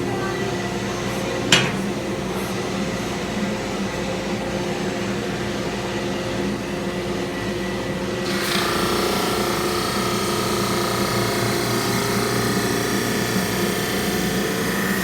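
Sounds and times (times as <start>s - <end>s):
drum sander humming: 0.0s - 3.1s, 8.2s - 15.0s.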